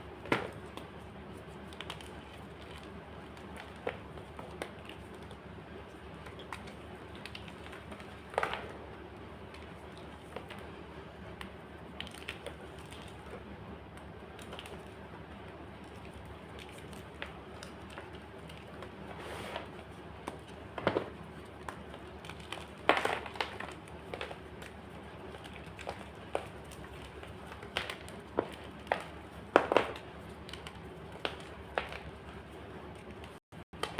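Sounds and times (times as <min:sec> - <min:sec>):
chalk crunching and crumbling: 0:15.8 - 0:32.3.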